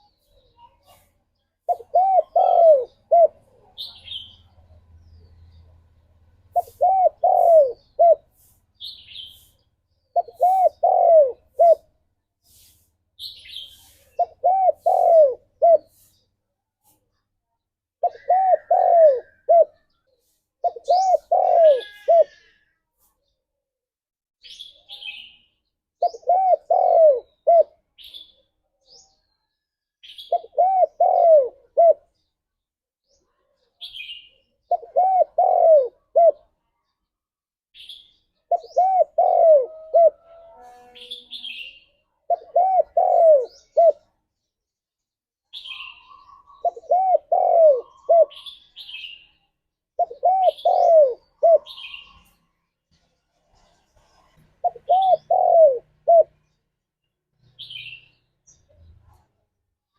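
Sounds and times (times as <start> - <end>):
dove cooing: 1.7 - 4.2, 6.5 - 8.3, 10.1 - 12.0, 14.0 - 15.9, 18.0 - 20.0, 20.6 - 22.6, 26.0 - 27.8, 30.2 - 32.2, 34.6 - 36.5, 38.5 - 41.2, 42.3 - 44.1, 45.8 - 48.8, 50.0 - 52.3, 54.0 - 56.4.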